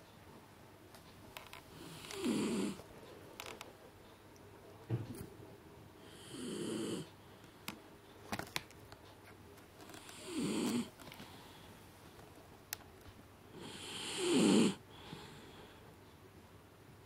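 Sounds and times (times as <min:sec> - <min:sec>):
dog snoring: 0:01.7 - 0:02.8, 0:06.0 - 0:07.1, 0:09.9 - 0:10.9, 0:13.6 - 0:15.4.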